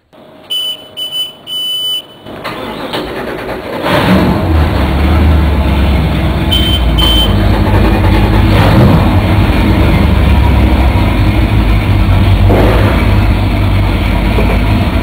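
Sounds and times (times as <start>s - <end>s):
boat engines humming: 0.0s - 15.0s
short high beeps: 0.5s - 2.3s, 6.5s - 7.4s.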